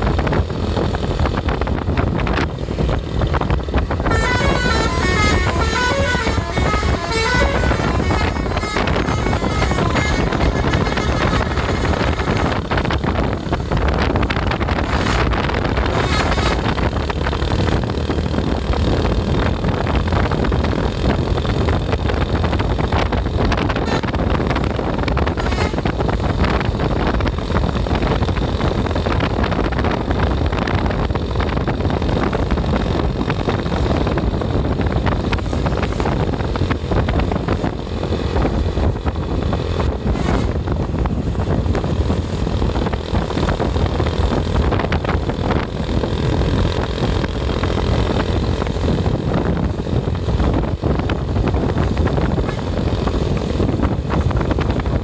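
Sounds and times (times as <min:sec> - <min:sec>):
vehicle engine and road noise: 0:00.0 - 0:55.0
wind rumbling on microphone: 0:00.0 - 0:55.0.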